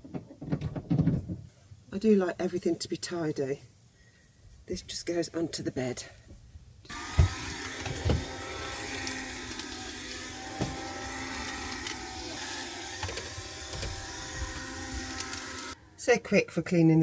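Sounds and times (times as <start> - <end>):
window vacuum motor hum: 6.9 - 15.8.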